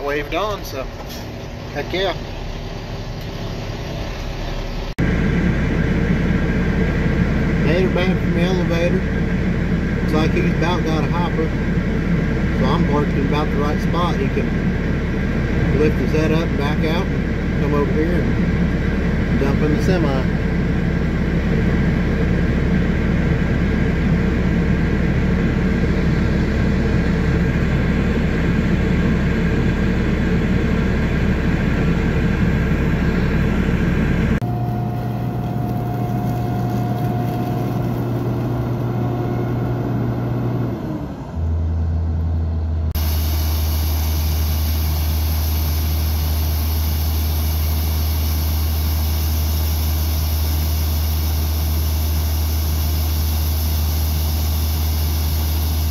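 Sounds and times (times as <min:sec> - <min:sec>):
diesel engines running: 0:00.0 - 0:55.9.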